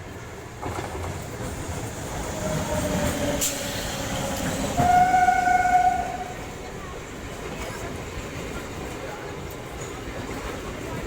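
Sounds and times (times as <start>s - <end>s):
electric train rumbling on track: 0.0s - 11.0s
loud steady train horn: 3.1s - 6.6s.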